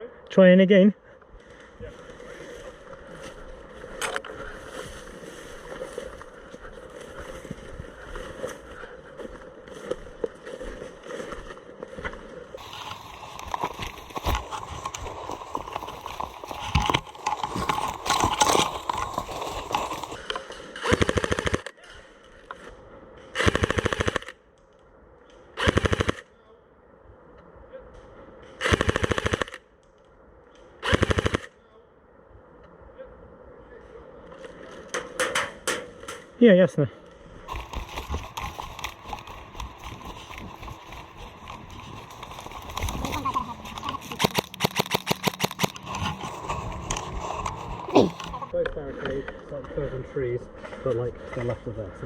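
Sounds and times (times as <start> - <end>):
airsoft gun full-auto bursts: 20.8 - 21.7, 23.4 - 24.3, 25.6 - 26.2, 28.6 - 29.6, 30.8 - 31.5, 44.0 - 46.0.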